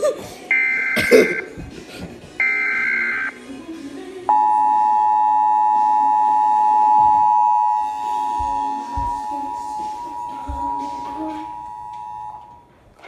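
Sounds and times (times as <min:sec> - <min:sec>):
two-tone alert tone: 0:04.3 - 0:12.5.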